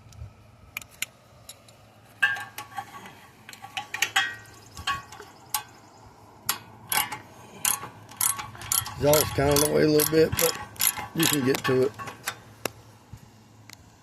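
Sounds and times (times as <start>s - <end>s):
wrench clicking on metal: 6.5s - 12.4s.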